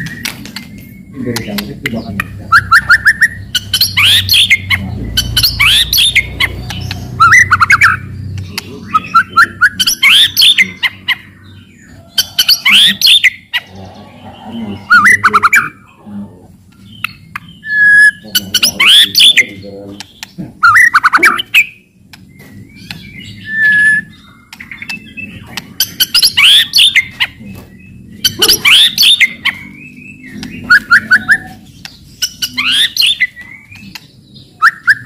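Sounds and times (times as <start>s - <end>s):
bird harsh rattling calls: 0.0s - 16.0s, 16.8s - 35.0s
bird whistled notes: 17.6s - 19.4s, 22.5s - 24.2s, 28.2s - 31.6s, 34.6s - 35.0s.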